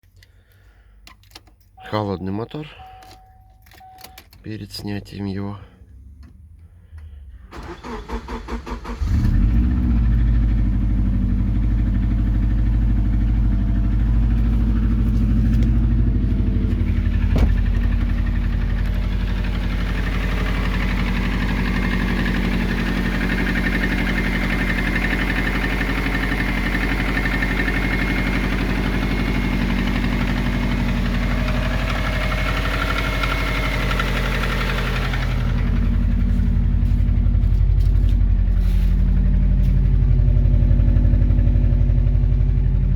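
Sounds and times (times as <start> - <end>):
car engine idling: 5.5 - 42.9
starter motor cranking: 7.6 - 9.5.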